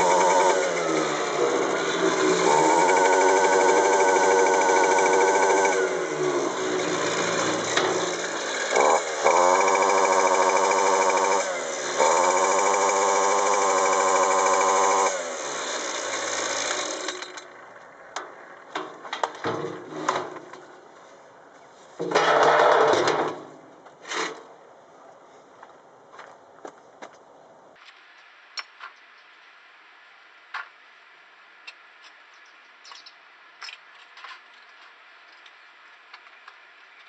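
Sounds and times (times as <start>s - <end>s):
string trimmer engine revving: 0.0s - 17.6s.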